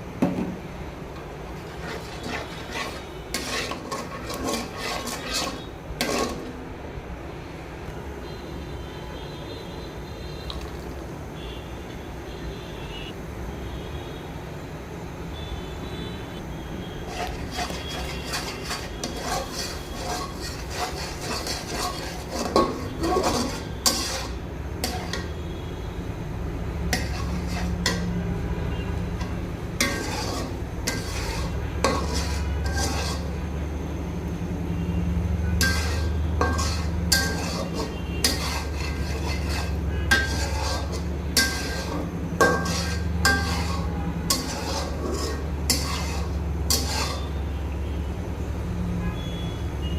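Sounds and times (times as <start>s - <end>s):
spoon scraping and clinking in pot: 1.5s - 6.6s, 17.1s - 25.3s, 26.9s - 28.1s, 29.1s - 33.4s, 35.6s - 47.4s.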